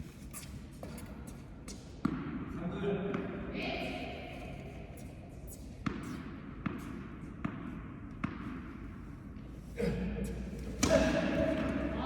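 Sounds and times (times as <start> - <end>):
tennis ball bouncing on court: 1.6 - 3.8, 5.0 - 9.0, 10.6 - 12.0.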